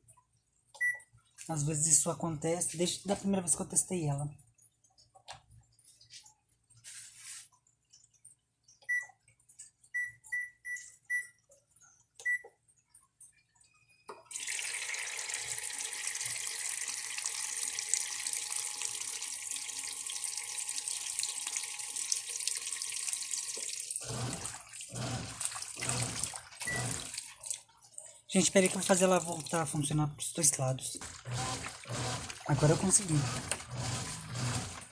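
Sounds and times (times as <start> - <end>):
washing machine beeps: 0.8 - 1.1, 8.8 - 9.2, 9.9 - 11.4, 12.2 - 12.6, 24.1 - 27.2
water rushing into machine: 14.3 - 27.5, 28.4 - 34.9.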